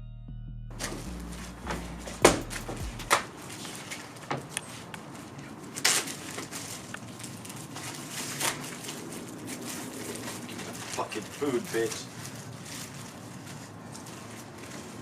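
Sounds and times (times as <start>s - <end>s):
low music hum: 0.0s - 3.5s.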